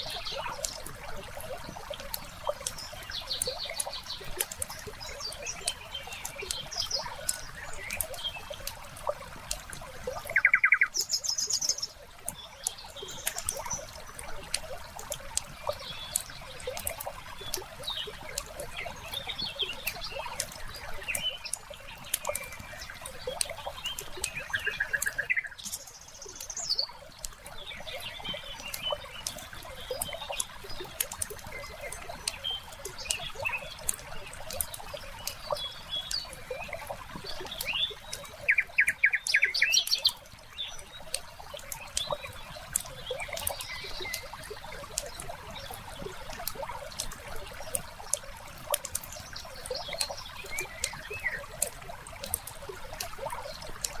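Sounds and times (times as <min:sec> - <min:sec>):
bird chirps: 0:10.2 - 0:12.0, 0:23.6 - 0:27.0, 0:37.4 - 0:40.9.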